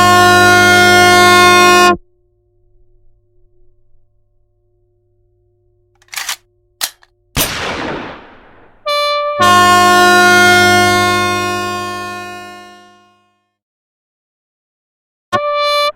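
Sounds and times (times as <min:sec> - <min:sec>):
loud sustained chord: 0:09.7 - 0:13.2.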